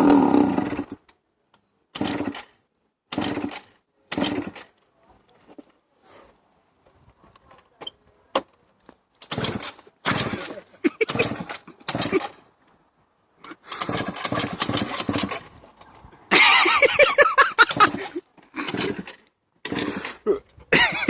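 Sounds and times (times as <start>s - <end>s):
motorcycle engine cranking: 0.0s - 1.1s, 1.9s - 4.8s, 9.2s - 12.4s, 13.4s - 16.0s, 16.7s - 20.2s.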